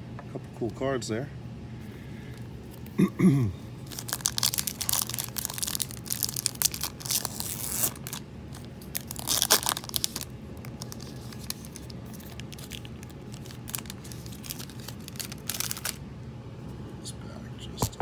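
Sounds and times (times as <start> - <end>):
wrapper tearing and crinkling: 3.8 - 16.0.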